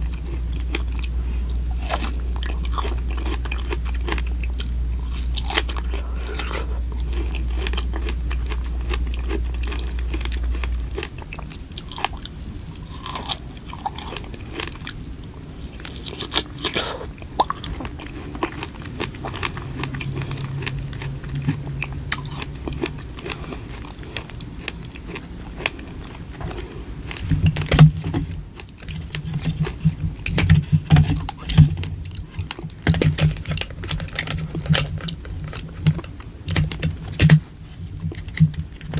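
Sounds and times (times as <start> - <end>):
biting and chewing food: 0.0 - 38.9
low steady hum: 0.0 - 38.9
small crackles and clicks: 17.4 - 38.9.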